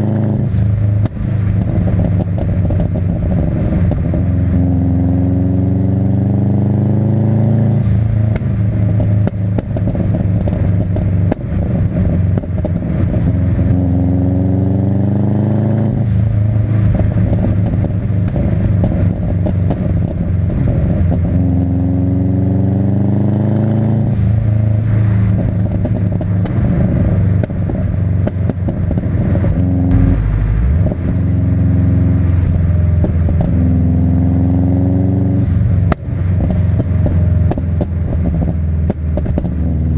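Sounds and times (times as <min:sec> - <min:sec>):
car engine revving: 0:00.0 - 0:39.9
exhaust pops and bangs: 0:01.0 - 0:04.3, 0:08.3 - 0:13.3, 0:16.8 - 0:21.4, 0:25.3 - 0:31.3, 0:32.3 - 0:33.6, 0:35.4 - 0:39.7.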